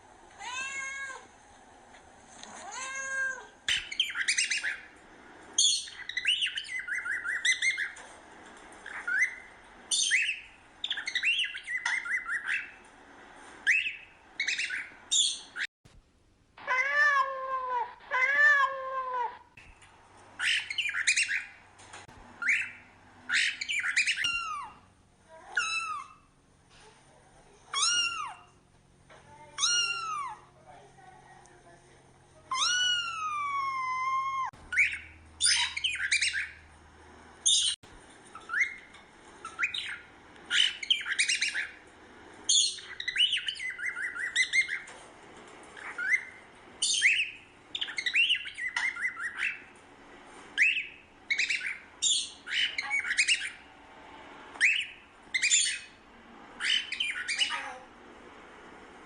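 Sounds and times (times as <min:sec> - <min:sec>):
cat meowing: 0:00.4 - 0:01.3, 0:02.6 - 0:03.6, 0:16.6 - 0:19.5
cockatiel chirping and whistling: 0:03.7 - 0:04.9, 0:05.6 - 0:08.0, 0:08.8 - 0:12.8, 0:13.6 - 0:15.6, 0:20.4 - 0:21.6, 0:22.4 - 0:24.8, 0:25.6 - 0:26.2, 0:27.8 - 0:28.5, 0:32.5 - 0:36.6, 0:37.5 - 0:37.8, 0:38.4 - 0:41.8, 0:42.5 - 0:44.9, 0:45.8 - 0:49.7, 0:50.6 - 0:53.6, 0:54.6 - 0:55.9, 0:56.6 - 0:57.6.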